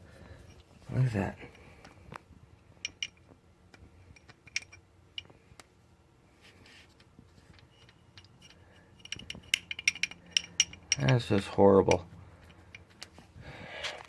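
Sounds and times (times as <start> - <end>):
faint metallic clicks and ticks: 6.9 - 13.2.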